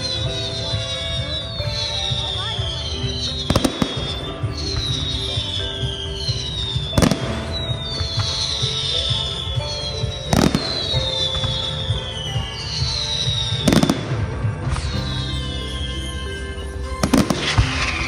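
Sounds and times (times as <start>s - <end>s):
whistling firework shells: 0.0s - 18.0s
firework shells bursting: 16.9s - 18.0s.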